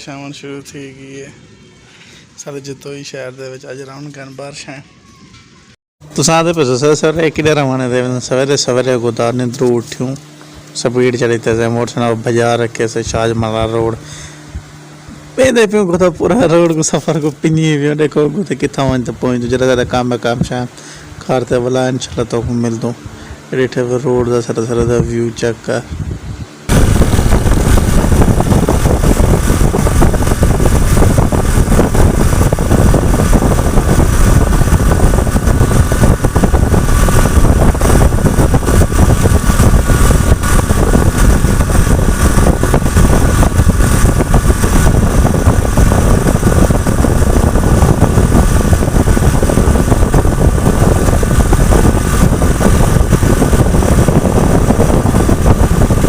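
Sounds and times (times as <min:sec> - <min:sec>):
wind on microphone: 0:24.8 - 0:56.0
motorcycle engine running: 0:26.7 - 0:56.0.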